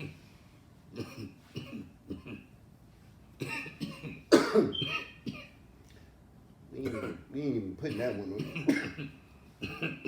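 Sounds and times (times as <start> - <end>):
man coughing: 0.9 - 2.5, 3.4 - 5.6, 6.8 - 7.3, 7.9 - 10.0.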